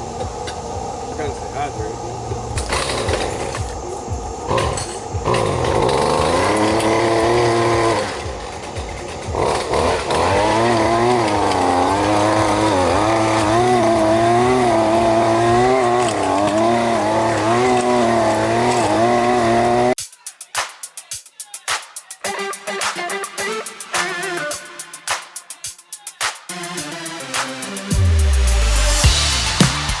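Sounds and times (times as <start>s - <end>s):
small gas engine revving: 4.6s - 8.6s, 9.2s - 20.0s.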